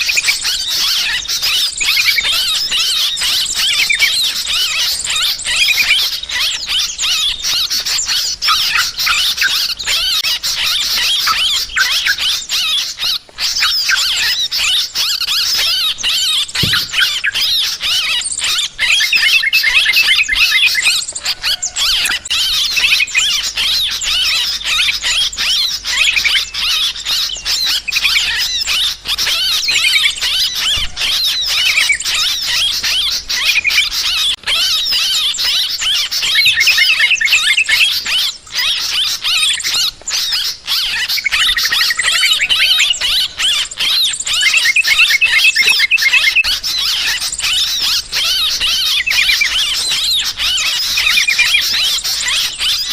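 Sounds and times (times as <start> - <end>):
birds chattering in chorus: 0.0 - 52.9.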